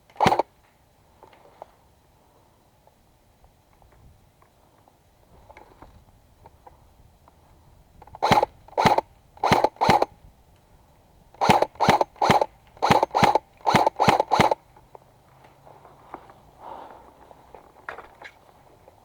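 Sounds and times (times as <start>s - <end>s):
airsoft gun shots: 0.2s - 0.5s, 8.2s - 10.1s, 11.4s - 14.6s.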